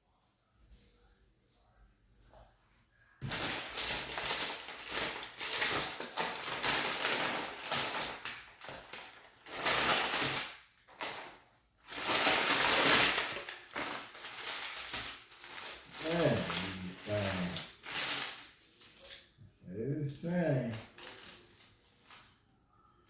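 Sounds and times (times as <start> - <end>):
paper packaging crinkling: 3.2 - 19.2, 20.3 - 22.3.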